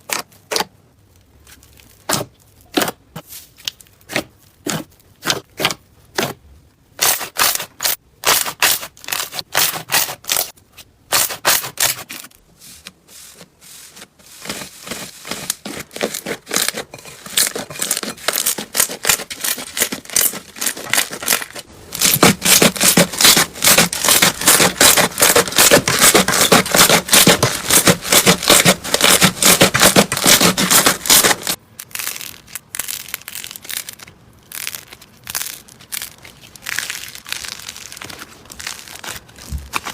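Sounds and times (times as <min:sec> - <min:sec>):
slime crackling and popping: 0:30.2 - 0:39.9.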